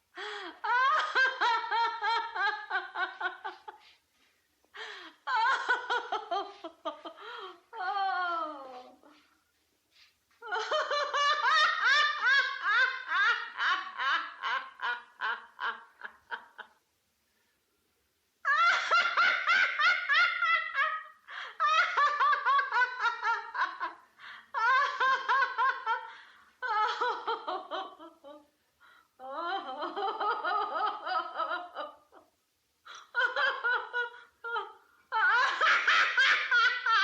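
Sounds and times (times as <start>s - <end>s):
woman laughing: 0.2s - 4.0s, 4.8s - 9.3s, 10.4s - 16.8s, 18.5s - 28.5s, 32.9s - 37.0s.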